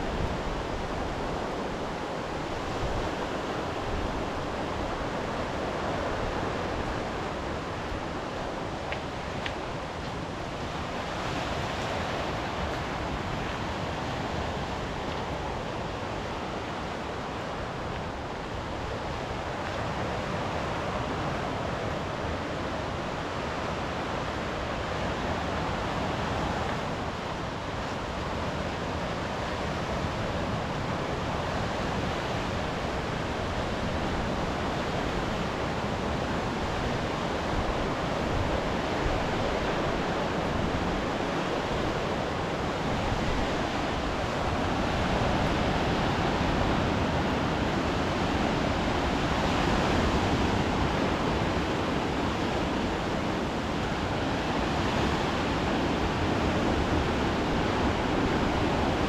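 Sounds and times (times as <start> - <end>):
sea surf: 0.0 - 59.0
wind: 0.0 - 59.0.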